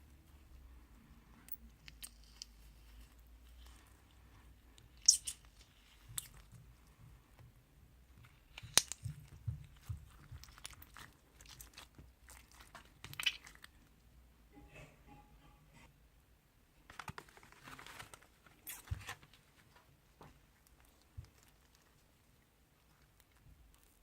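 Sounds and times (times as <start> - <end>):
slime squished by hand crackling: 8.2 - 13.8.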